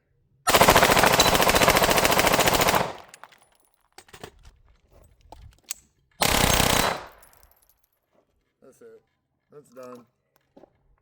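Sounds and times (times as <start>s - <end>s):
pistol rapid gunshots: 0.5s - 3.1s, 6.2s - 7.2s.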